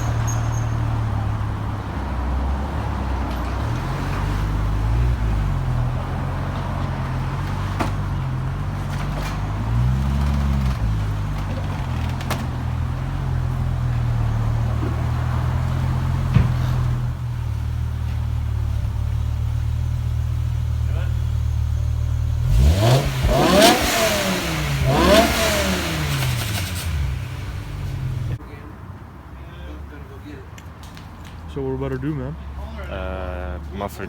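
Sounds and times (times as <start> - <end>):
car engine running: 9.6 - 28.4.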